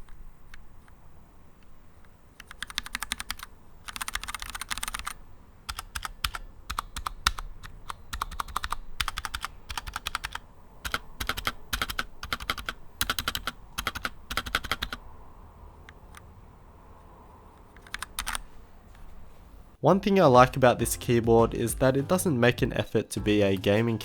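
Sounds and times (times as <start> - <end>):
typing on mechanical keyboard: 2.4 - 15.0, 17.6 - 18.5.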